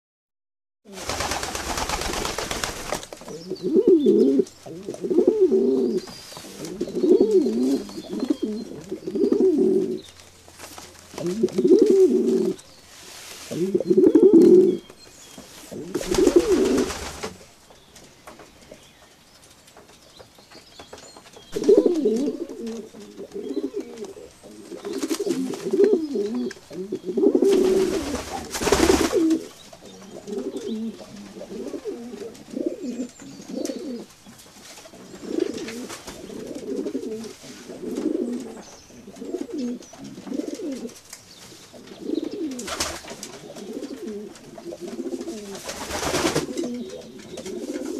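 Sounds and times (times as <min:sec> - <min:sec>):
noisy rustling bursts: 0:00.9 - 0:03.3, 0:10.0 - 0:17.6, 0:27.4 - 0:29.7, 0:45.0 - 0:46.7
pigeons cooing: 0:03.2 - 0:10.2, 0:11.1 - 0:12.6, 0:13.5 - 0:14.9, 0:15.7 - 0:17.3, 0:21.5 - 0:34.1, 0:34.9 - 0:41.0, 0:41.7 - 0:47.9.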